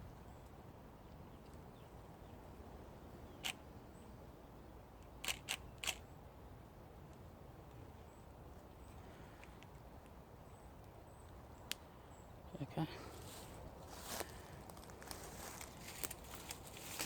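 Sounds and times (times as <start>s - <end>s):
faint low background noise: 0.0s - 17.0s
camera shutter firing: 5.2s - 6.0s.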